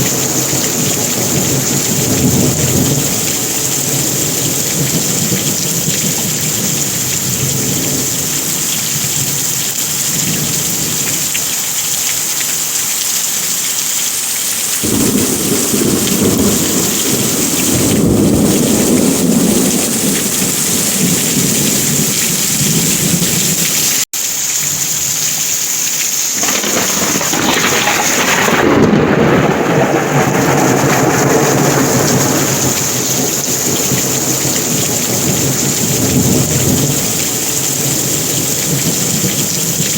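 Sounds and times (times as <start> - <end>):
thunder rolling: 0.0 - 11.1, 14.8 - 23.9, 26.4 - 39.9
heavy rain: 0.0 - 39.9.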